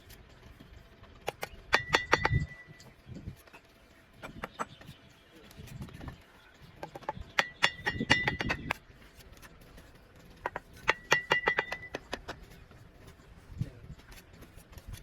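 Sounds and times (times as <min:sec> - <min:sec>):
trowel tapping brick: 0:06.8 - 0:09.6, 0:10.4 - 0:12.6.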